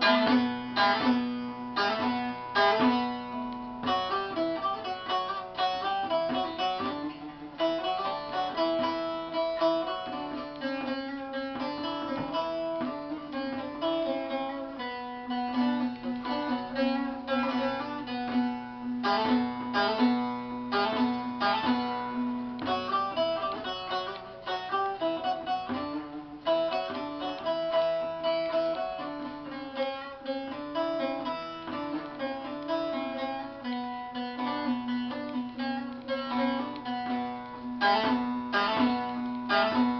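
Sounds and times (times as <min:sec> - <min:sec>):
plucked string instrument melody: 0:00.0 - 0:39.9.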